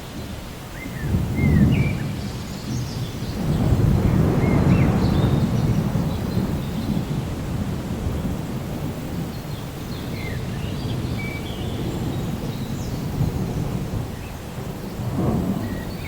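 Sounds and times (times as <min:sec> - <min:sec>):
steady rainfall: 0:00.0 - 0:16.0
rolling rumble of thunder: 0:00.8 - 0:16.0.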